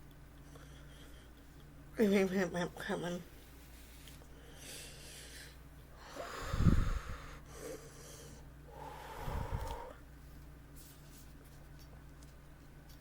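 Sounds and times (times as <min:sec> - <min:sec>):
person breathing out hard: 0:04.4 - 0:10.0.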